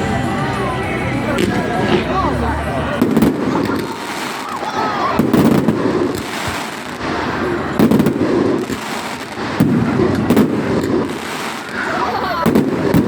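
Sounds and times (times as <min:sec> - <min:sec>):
firework crackling: 0:00.0 - 0:13.0
firework shells booming: 0:03.0 - 0:13.0.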